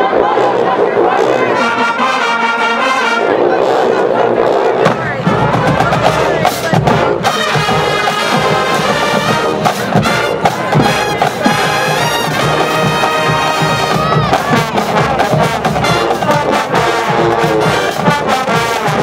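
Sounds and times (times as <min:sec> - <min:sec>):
brass chords with swoops: 0:00.0 - 0:19.0
marching drums: 0:04.6 - 0:19.0.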